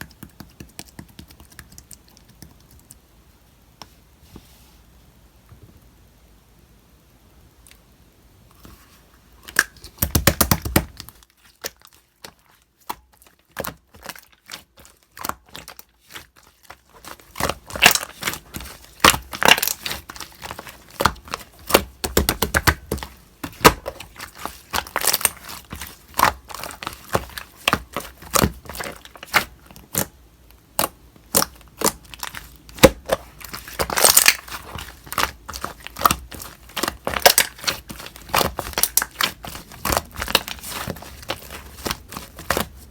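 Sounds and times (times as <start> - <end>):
slime crackling and popping: 9.4 - 42.9.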